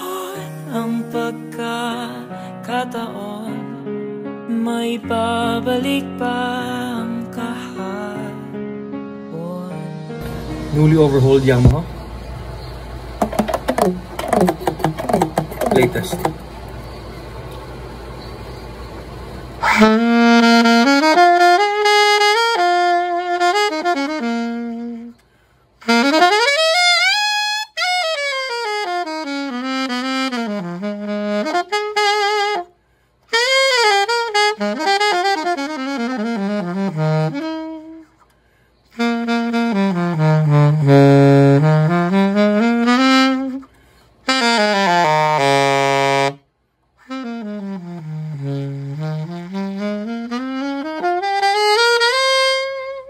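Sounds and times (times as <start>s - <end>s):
alto saxophone slow melody: 0.0s - 1.4s, 11.6s - 16.7s, 19.2s - 53.0s.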